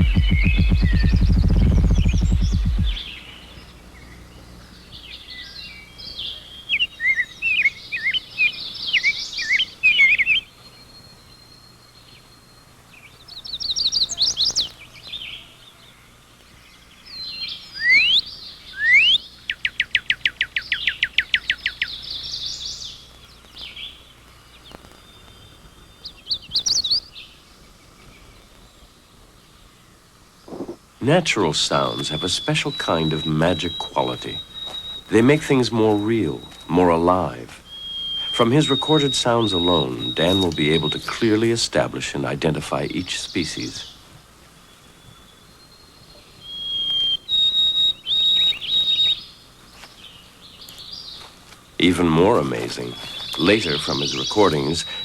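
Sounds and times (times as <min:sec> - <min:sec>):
rising whistled sweeps: 0:00.0 - 0:03.1
bird trill: 0:00.0 - 0:15.6, 0:16.9 - 0:27.4, 0:30.5 - 0:44.0, 0:44.6 - 0:55.0
songbirds twittering: 0:00.0 - 0:55.0.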